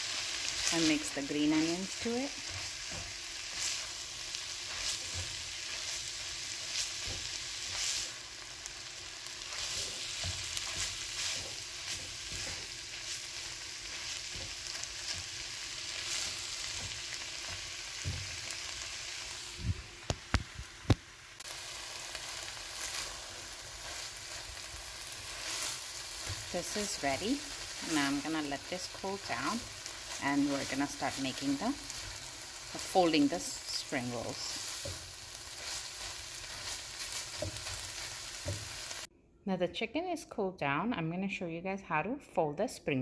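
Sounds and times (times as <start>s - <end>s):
filling sizzling in frying pan: 0.0s - 39.1s
stirring utensil scraping: 9.4s - 18.2s.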